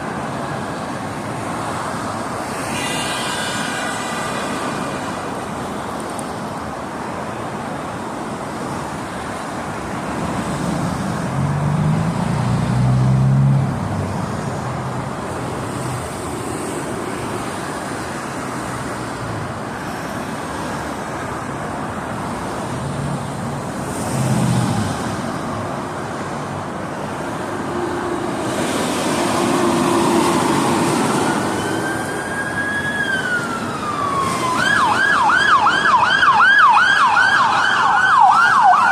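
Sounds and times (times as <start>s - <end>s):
freeway traffic passing: 0.0s - 38.9s
police siren wailing: 28.0s - 38.9s.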